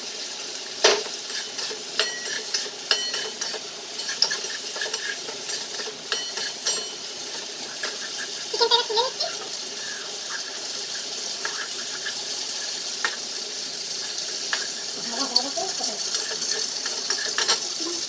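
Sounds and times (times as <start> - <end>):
chicken frying in oil: 0.0 - 18.0
utensil clicking against pan: 0.8 - 8.4, 15.4 - 17.7.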